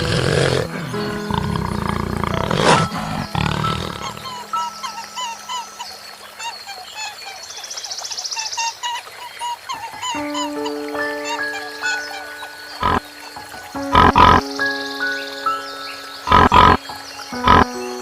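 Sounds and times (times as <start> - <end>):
lion roaring and growling: 0.0 - 4.4.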